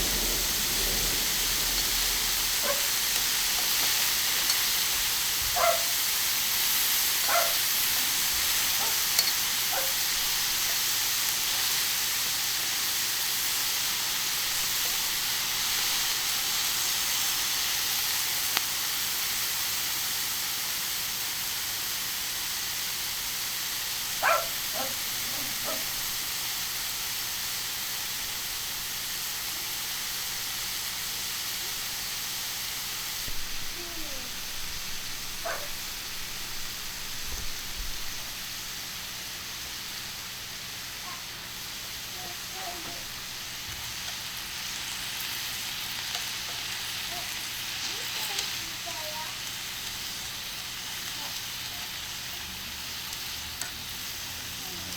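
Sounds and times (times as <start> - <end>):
sharp crackles: 0.0 - 5.9
meat sizzling on griddle: 0.0 - 54.9.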